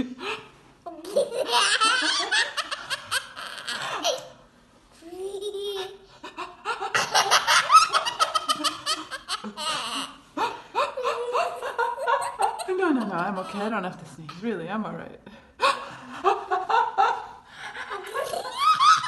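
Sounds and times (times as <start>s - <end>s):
toddler laughing: 0.9s - 4.4s, 5.0s - 12.7s, 17.7s - 19.0s.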